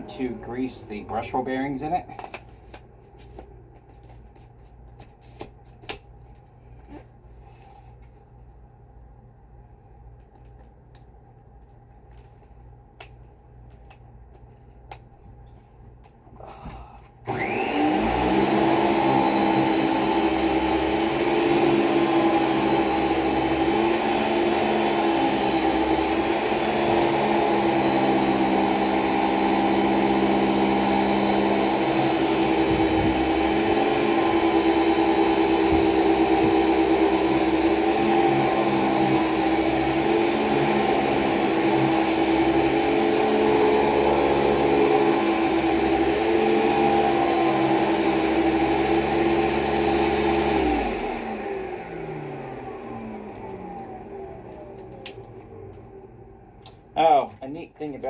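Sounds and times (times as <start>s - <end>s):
vacuum cleaner running: 0.0s - 2.3s, 16.4s - 56.8s.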